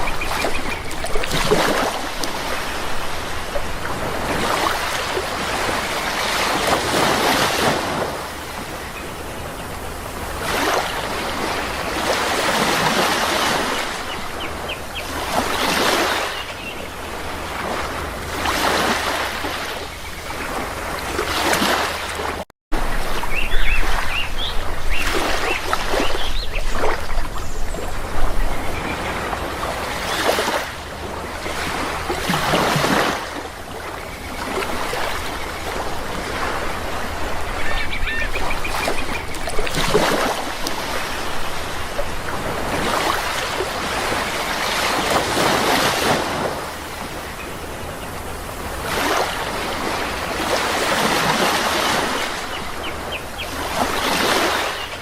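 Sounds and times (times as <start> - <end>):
birds calling: 0.0 - 7.7, 8.4 - 17.8, 22.9 - 55.0
sea waves breaking: 0.0 - 55.0.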